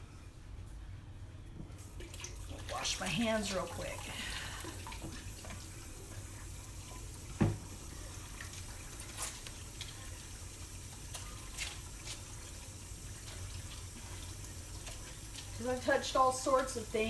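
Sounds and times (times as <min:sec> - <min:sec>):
faucet running water: 0:01.9 - 0:17.0
hands washing under water: 0:02.0 - 0:06.5, 0:07.2 - 0:17.0
light knocks and thump: 0:07.4 - 0:07.7.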